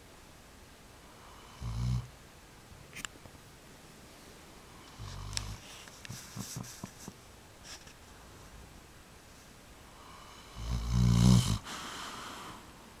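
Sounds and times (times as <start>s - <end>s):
pet snoring: 4.8s - 5.7s, 10.0s - 12.4s
breathy exhale: 11.4s - 12.8s.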